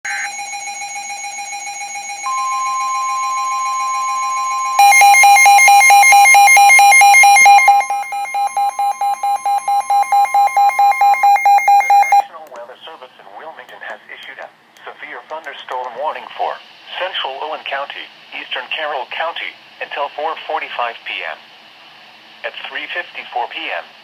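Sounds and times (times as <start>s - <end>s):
rapid electronic beeping: 0.0s - 12.2s
steady electronic alert tones: 0.1s - 12.2s.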